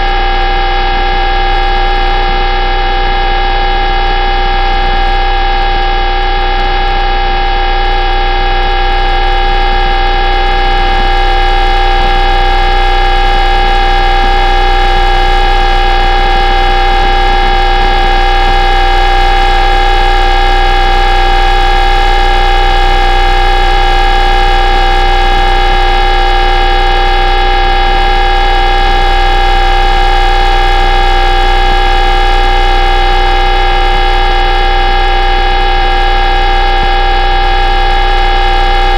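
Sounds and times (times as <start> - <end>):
radio humming drone: 29.4 - 38.9.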